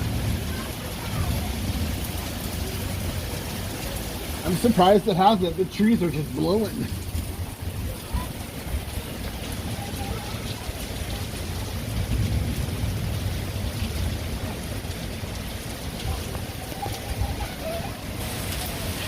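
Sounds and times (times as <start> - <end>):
thunder rumble: 0.0 - 5.1, 6.2 - 19.0
heavy rain pouring: 0.0 - 19.0
wind through trees: 0.0 - 19.0.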